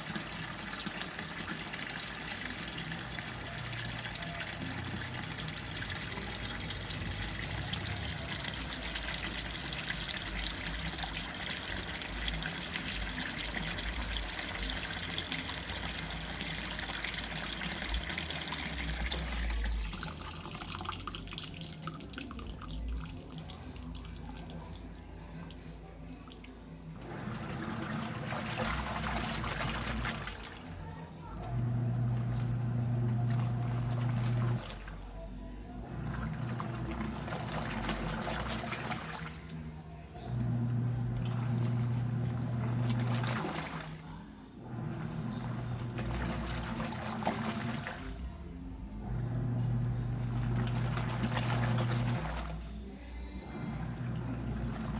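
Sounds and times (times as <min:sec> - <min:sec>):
water splashing in washing machine: 0:00.0 - 0:25.1, 0:26.2 - 0:52.8, 0:53.6 - 0:54.9
low hum: 0:47.5 - 0:54.9.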